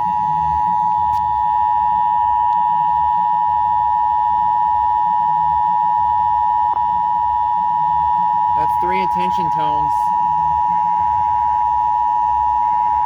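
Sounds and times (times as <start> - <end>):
steady alert tone: 8.6 - 10.1.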